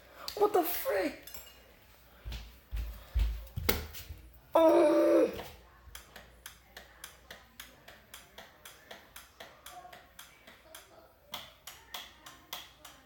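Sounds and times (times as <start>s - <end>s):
faint evenly spaced clicking: 5.9s - 13.0s.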